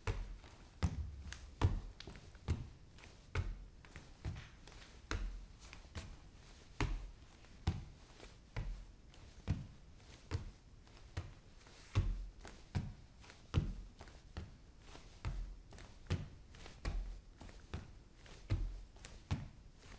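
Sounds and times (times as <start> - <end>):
bare footsteps on wooden floor: 0.0 - 6.2.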